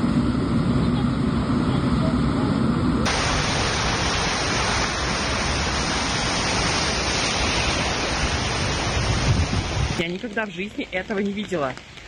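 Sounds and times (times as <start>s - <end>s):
heavy rain hissing: 3.0s - 12.0s.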